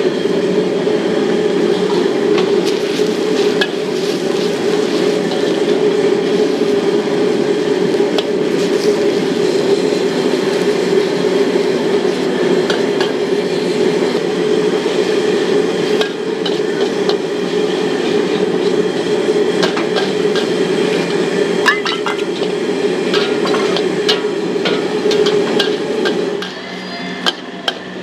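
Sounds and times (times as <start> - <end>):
gas burner roaring: 0.0 - 28.0
metal utensil clinking on wok: 21.7 - 22.4.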